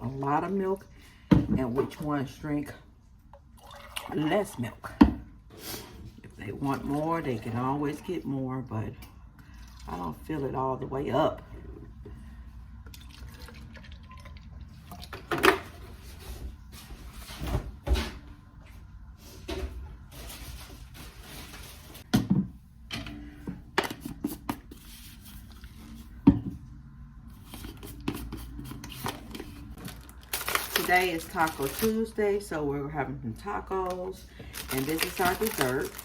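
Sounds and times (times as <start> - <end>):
milk pouring into cups: 3.4 - 4.6, 6.8 - 10.3.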